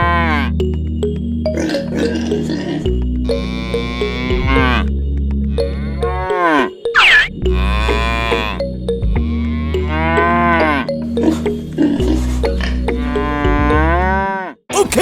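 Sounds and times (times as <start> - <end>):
cattle mooing: 0.0 - 0.5, 1.7 - 4.8, 5.6 - 6.8, 7.5 - 8.6, 9.4 - 10.9, 12.9 - 14.6.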